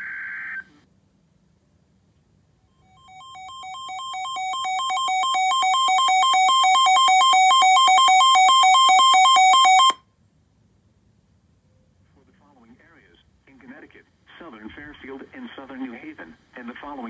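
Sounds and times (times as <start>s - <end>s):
alternating buzzy alarm tones: 2.8s - 10.0s.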